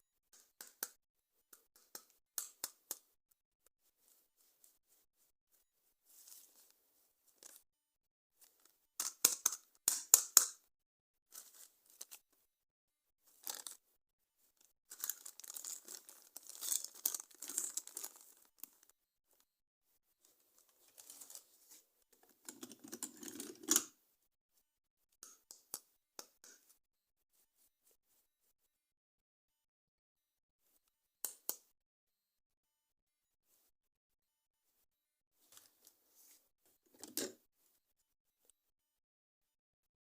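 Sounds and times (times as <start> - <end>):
plastic toy parts clicking: 9.0 - 10.6
packaging crinkling and tearing: 13.4 - 13.8, 14.9 - 18.8
packaging rustling: 13.4 - 13.8, 14.9 - 18.8, 20.8 - 21.8.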